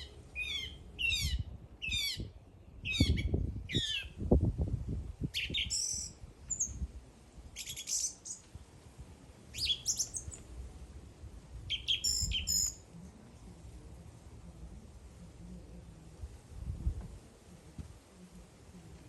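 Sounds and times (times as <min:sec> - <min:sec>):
bird chirping: 0:00.0 - 0:04.2, 0:05.4 - 0:06.8, 0:07.6 - 0:08.4, 0:09.5 - 0:10.4, 0:11.7 - 0:12.8.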